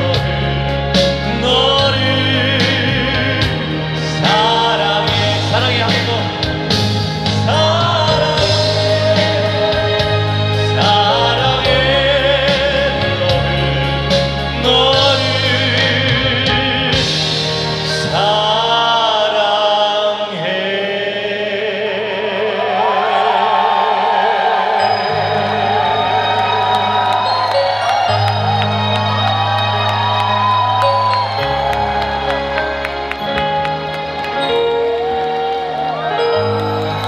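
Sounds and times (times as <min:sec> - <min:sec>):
band accompaniment: 0:00.0 - 0:20.5, 0:24.6 - 0:37.0
person singing with vibrato: 0:00.0 - 0:28.8.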